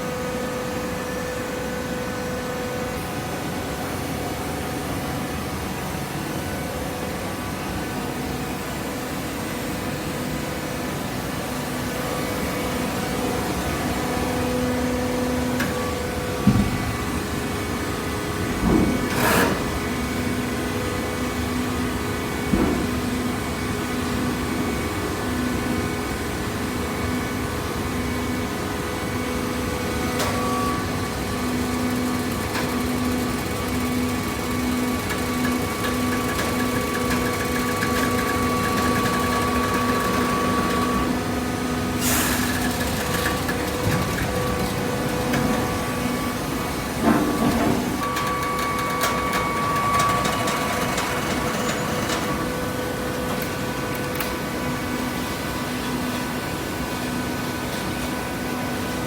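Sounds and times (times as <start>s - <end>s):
hydraulic baler humming: 10.9s - 24.7s, 27.2s - 57.3s.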